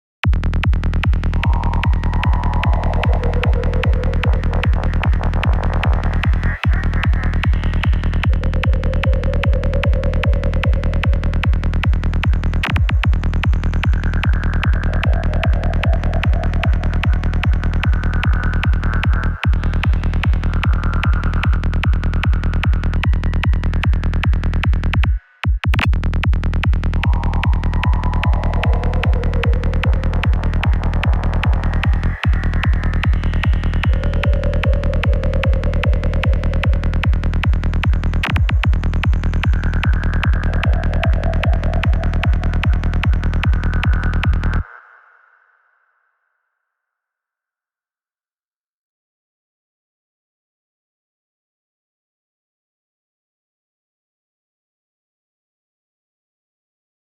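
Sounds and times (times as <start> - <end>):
psytrance music: 0.3 - 45.0.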